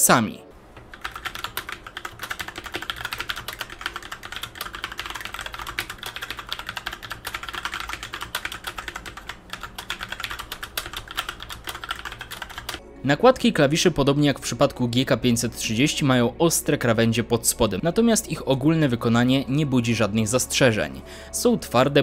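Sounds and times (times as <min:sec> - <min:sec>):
mechanical keyboard typing: 0:00.7 - 0:12.8.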